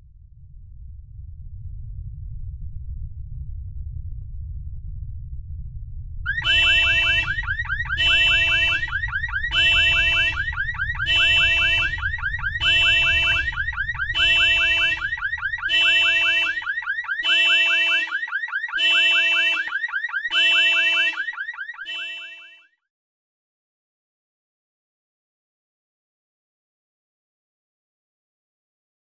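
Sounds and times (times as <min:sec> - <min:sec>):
low earthquake rumble: 0:00.0 - 0:17.2
electronic alarm warbling tone: 0:06.3 - 0:22.6.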